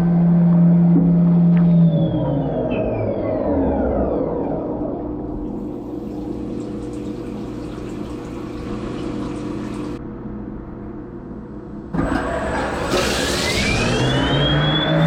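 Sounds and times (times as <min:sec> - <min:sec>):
coolant washing: 0:05.3 - 0:10.0, 0:12.0 - 0:15.0.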